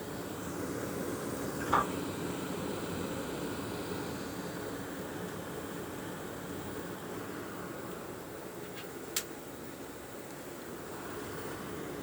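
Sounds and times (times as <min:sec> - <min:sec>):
air-handling unit hiss: 0:00.0 - 0:12.0
sharp knock from air unit: 0:01.6 - 0:02.0.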